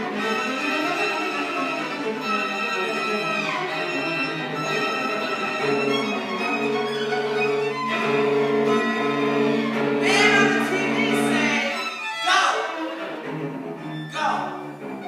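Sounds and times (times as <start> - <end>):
violins playing: 0.0 - 15.0
low strings sustained chords: 8.7 - 12.0.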